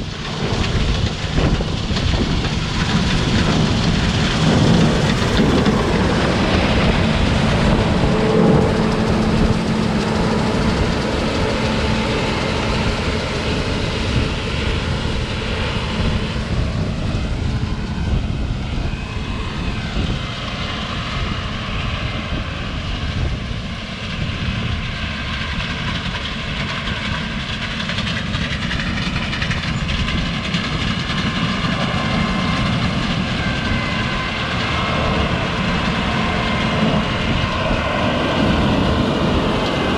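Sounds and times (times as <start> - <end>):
diesel engine running: 0.0 - 18.5.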